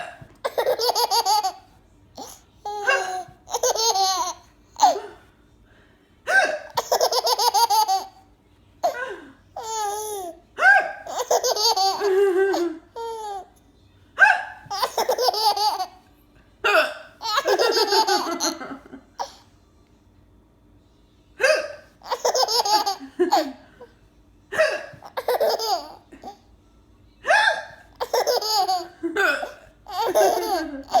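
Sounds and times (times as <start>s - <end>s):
baby laughing: 0.4s - 5.2s, 6.4s - 8.2s, 9.6s - 13.5s, 14.7s - 16.1s, 16.7s - 19.4s, 21.5s - 23.6s, 24.6s - 26.4s, 27.4s - 31.0s
woman hiccuping: 6.3s - 6.7s, 16.7s - 17.1s, 21.4s - 21.8s, 24.6s - 25.0s.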